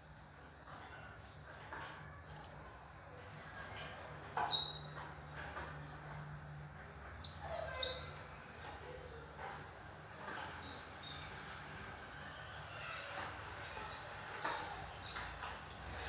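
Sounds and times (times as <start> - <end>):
canaries chirping: 0.7 - 3.0, 4.3 - 5.1, 7.1 - 8.7, 10.2 - 16.0.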